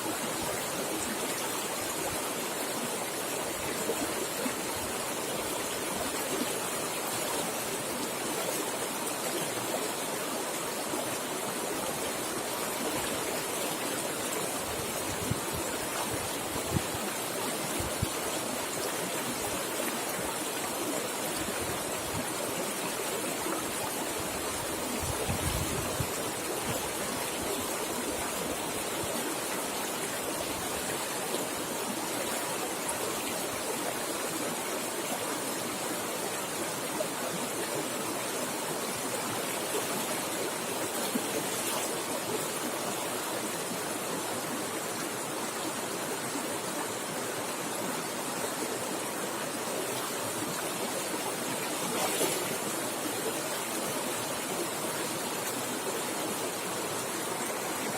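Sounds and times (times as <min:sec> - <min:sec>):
river water rushing over rocks: 0:00.0 - 0:57.9.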